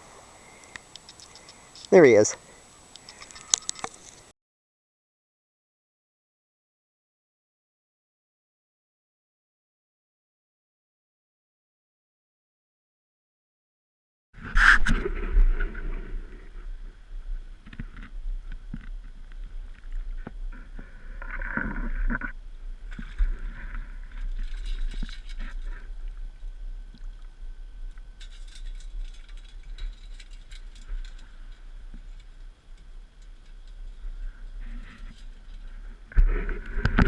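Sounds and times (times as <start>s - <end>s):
low rumble: 14.5s - 37.0s
water sloshing and gurgling: 17.6s - 28.0s.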